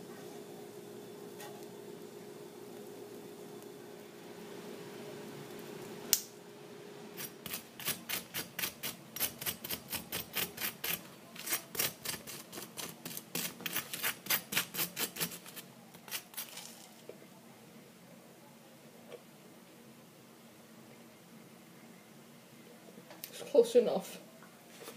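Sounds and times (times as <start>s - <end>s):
hum: 0.0s - 7.2s
utensil beating batter in dish: 7.2s - 16.8s.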